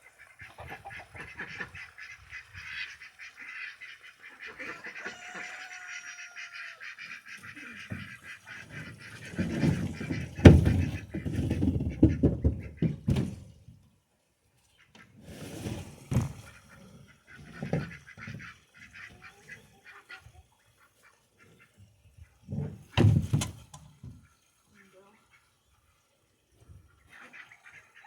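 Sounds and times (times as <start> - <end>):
domestic waterfowl calling: 0.0 - 12.9, 27.0 - 28.0.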